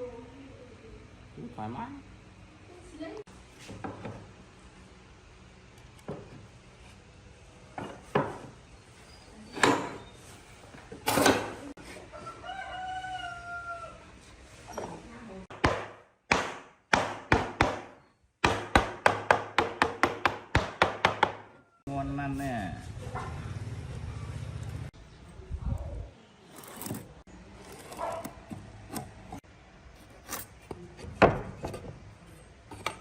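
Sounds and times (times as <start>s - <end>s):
rooster crowing: 12.0s - 14.2s.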